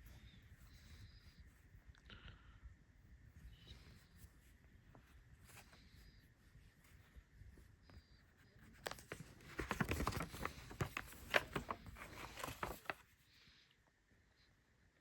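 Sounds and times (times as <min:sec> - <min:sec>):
packaging clicks and crinkling: 0:08.8 - 0:13.0.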